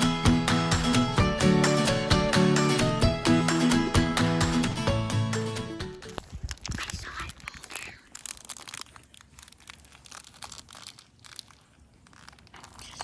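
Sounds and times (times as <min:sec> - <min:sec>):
dry brush and leaves crunching: 0:06.0 - 0:13.0.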